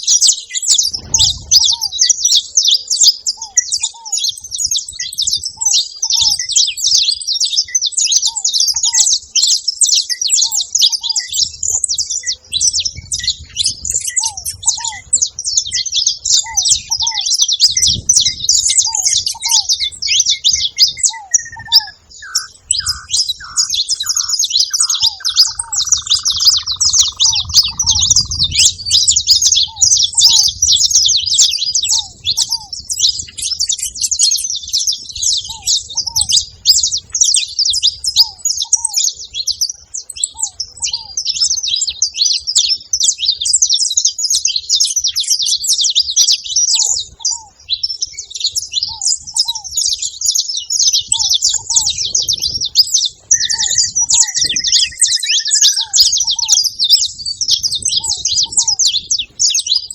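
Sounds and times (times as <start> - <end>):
finches chirping: 0.0 - 59.9
longer falling bird call: 18.8 - 28.7, 53.3 - 56.8.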